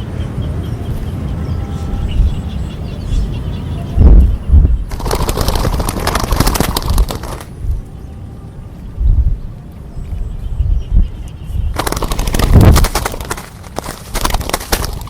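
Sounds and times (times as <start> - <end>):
dove wings flapping: 4.9 - 7.6, 11.7 - 15.0.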